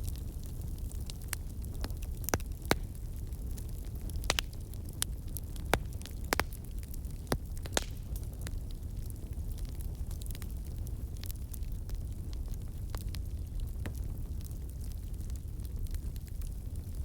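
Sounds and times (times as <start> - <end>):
campfire crackling and popping: 0.0 - 17.0.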